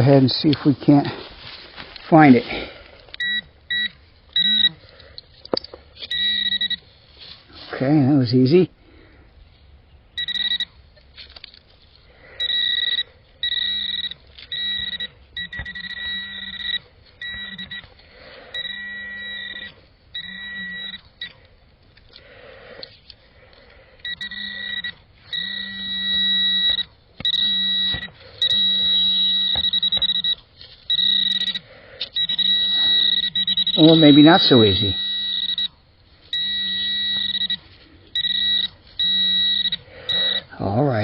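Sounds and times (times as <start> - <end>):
metal detector tone: 3.1 - 5.0, 5.6 - 6.9, 10.1 - 10.8, 12.3 - 21.5, 24.0 - 40.8.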